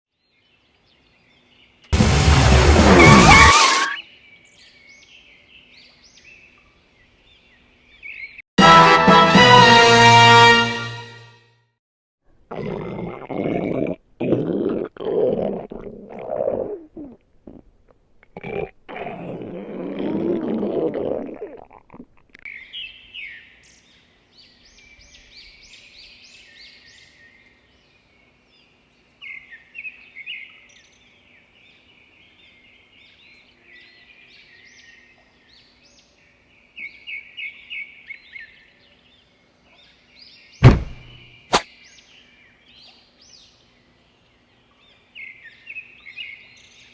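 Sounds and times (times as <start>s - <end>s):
stomach growl: 12.5s - 22.4s
birds chirping: 29.2s - 46.9s
sharp thump: 40.6s - 41.6s.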